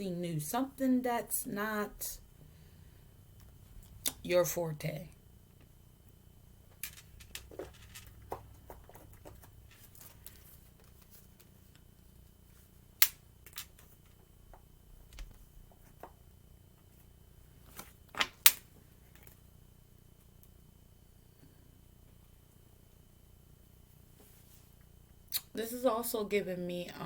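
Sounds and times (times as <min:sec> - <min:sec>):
cards clicking and tapping: 0:06.8 - 0:11.5
cards snapping: 0:13.0 - 0:13.8, 0:17.7 - 0:18.7.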